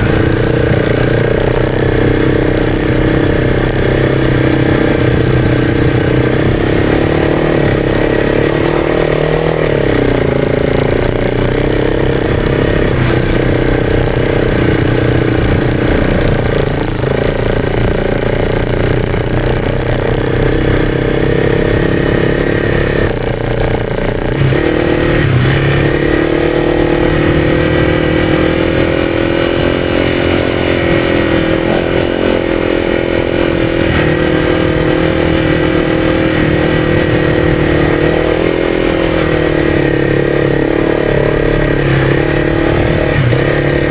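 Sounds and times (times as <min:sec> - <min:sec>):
motorcycle engine revving: 0:00.0 - 0:43.9.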